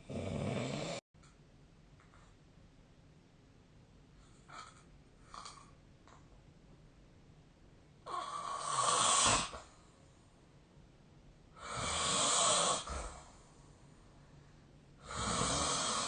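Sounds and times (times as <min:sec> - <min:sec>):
person snoring: 0:00.0 - 0:01.0, 0:08.1 - 0:09.7, 0:11.6 - 0:13.3, 0:15.0 - 0:16.0.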